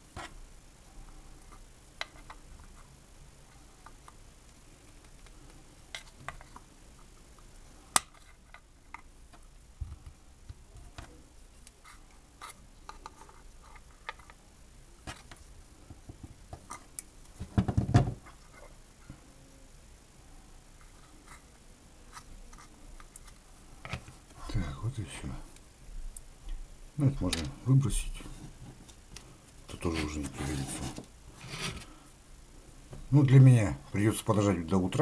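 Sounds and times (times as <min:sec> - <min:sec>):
knocks and rustling: 0:17.4 - 0:18.4.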